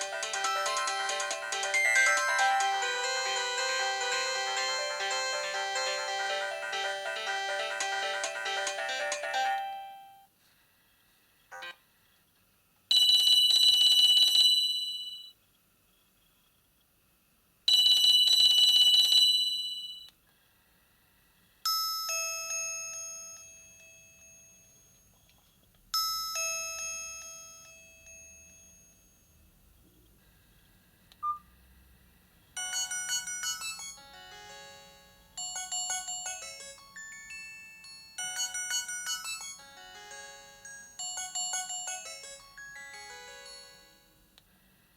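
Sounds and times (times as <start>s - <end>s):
melodic ringtone: 0.0s - 10.3s, 32.6s - 44.2s
phone beep: 31.2s - 31.5s.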